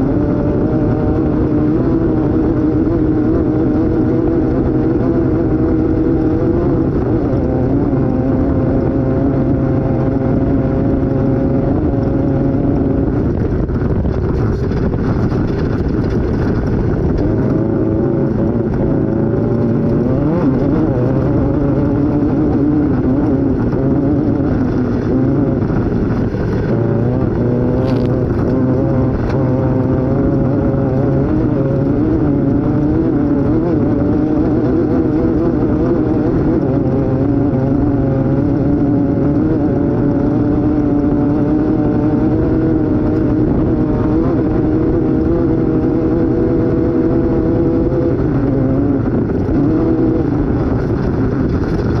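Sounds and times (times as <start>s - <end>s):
off-road vehicle engine revving: 0.0s - 52.0s.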